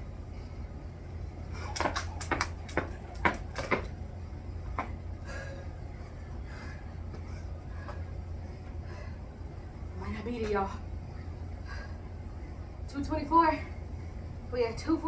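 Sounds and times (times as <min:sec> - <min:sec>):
jump rope slapping floor: 0:01.6 - 0:04.0
heavy breathing: 0:05.1 - 0:09.7.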